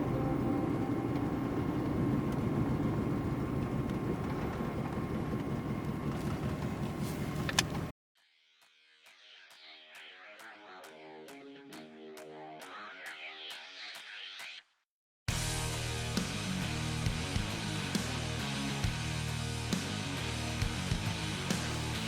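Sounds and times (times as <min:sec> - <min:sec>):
guitar music: 0:00.0 - 0:03.1
vehicle road and engine rumble: 0:00.0 - 0:07.9.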